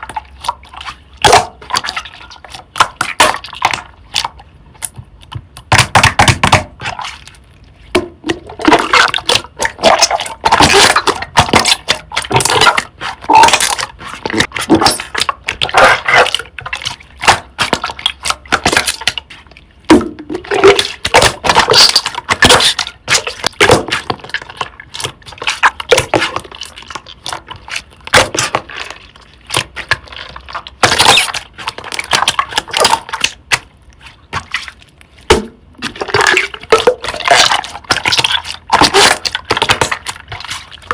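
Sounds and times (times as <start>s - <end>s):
slime crackling and popping: 30.6s - 40.6s.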